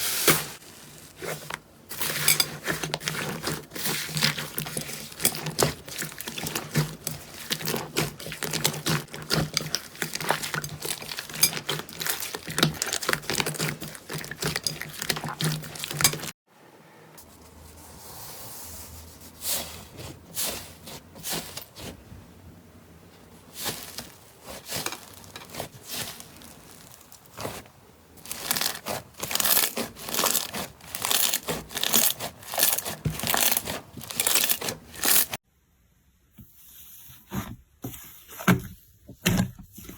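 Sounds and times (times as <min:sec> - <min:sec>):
slime squelches: 0:00.0 - 0:16.4, 0:23.3 - 0:35.4
slime crackling and popping: 0:03.9 - 0:16.0, 0:28.2 - 0:35.4.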